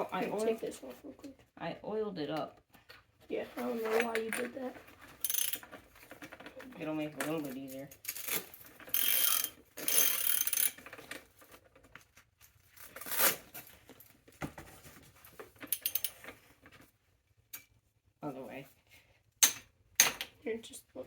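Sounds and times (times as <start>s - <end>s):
small metallic clicks: 15.6s - 16.4s.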